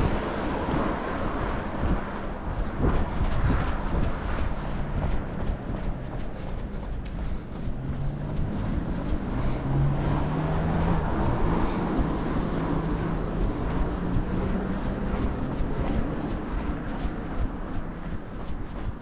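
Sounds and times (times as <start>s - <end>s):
vehicle engine passing: 0.0s - 19.0s.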